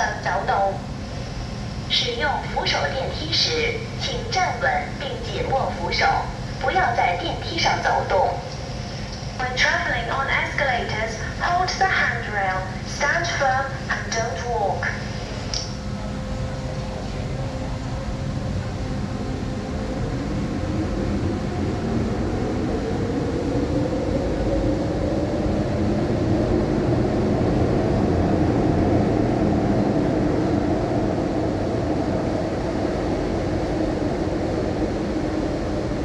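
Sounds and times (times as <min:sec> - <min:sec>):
low rumble of running gear: 0:15.0 - 0:36.0.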